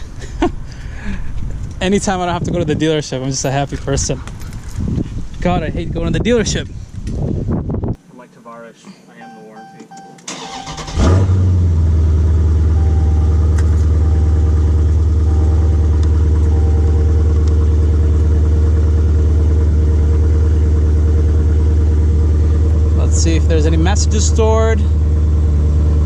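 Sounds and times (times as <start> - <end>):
starter cranking engine: 10.3 - 11.3
car engine idling: 10.3 - 26.0.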